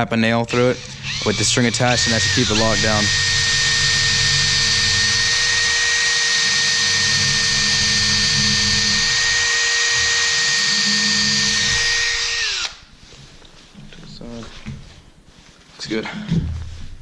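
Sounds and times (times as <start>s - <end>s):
drill bit cutting wood: 0.5s - 12.8s
electric drill whining: 0.5s - 12.9s.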